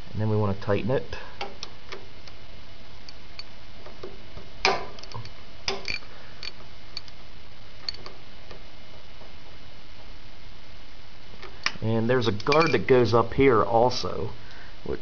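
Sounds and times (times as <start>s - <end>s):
metal clank: 12.4s - 12.9s.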